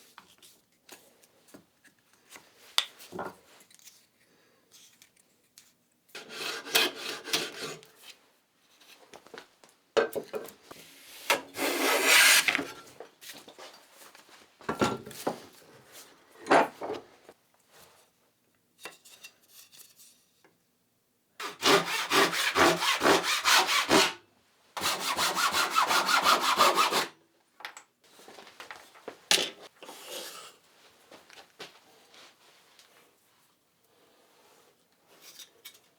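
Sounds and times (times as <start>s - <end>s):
hand saw cutting wood: 6.2s - 7.8s, 11.3s - 12.7s, 21.4s - 24.2s, 24.8s - 27.2s.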